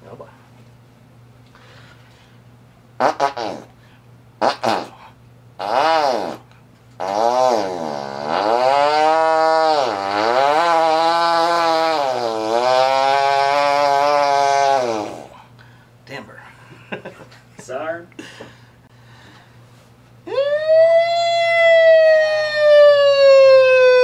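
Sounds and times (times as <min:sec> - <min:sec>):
man imitating a chainsaw: 0:03.0 - 0:03.8, 0:04.4 - 0:15.4.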